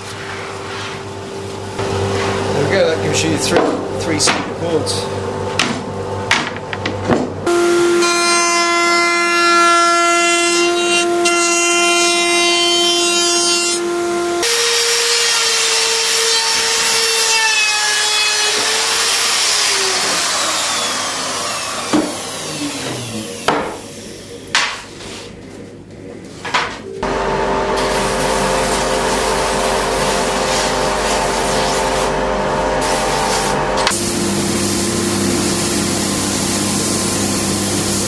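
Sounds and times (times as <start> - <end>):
power saw whining: 16.4 - 23.9.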